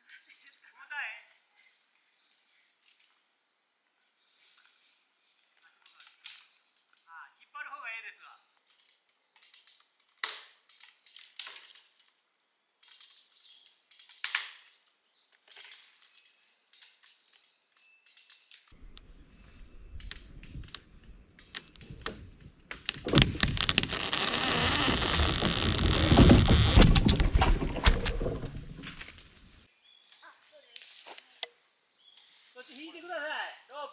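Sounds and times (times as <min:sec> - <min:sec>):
twigs crackling and snapping: 0:08.6 - 0:19.1, 0:19.9 - 0:31.5
loud dense crashing and crackling: 0:23.0 - 0:29.6.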